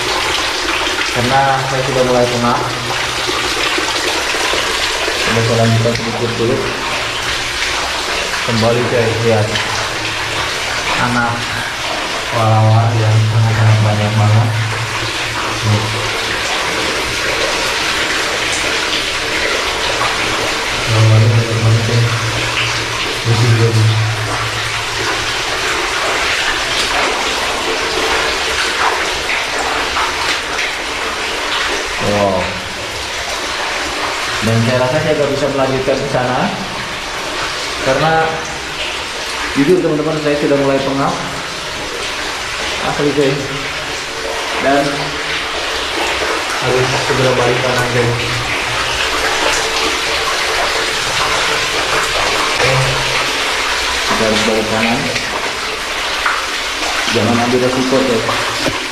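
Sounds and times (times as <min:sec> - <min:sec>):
running water echoing in tunnel: 0:00.0 - 0:58.9.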